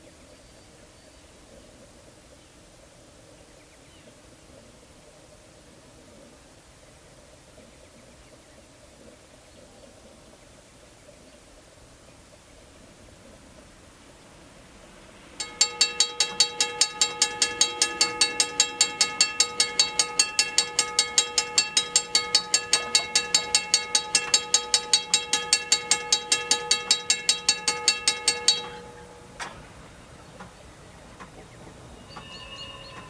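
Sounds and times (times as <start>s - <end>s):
railroad crossing bell ringing: 13.0s - 33.0s.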